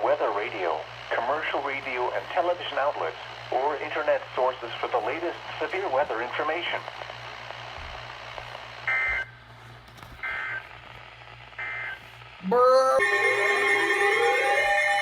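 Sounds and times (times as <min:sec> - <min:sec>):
steady hum and radio hiss: 0:00.0 - 0:15.0
two-tone data bursts: 0:11.6 - 0:15.0
rising tone into alarm chord: 0:12.4 - 0:15.0.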